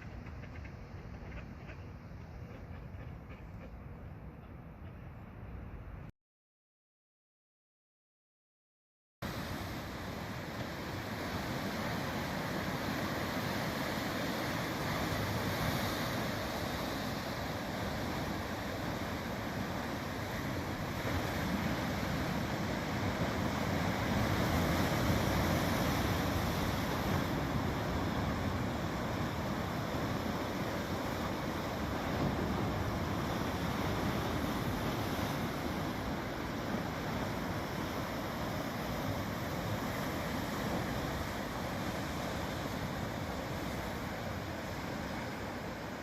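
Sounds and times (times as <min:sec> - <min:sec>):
waves breaking on beach: 0:09.2 - 0:46.0.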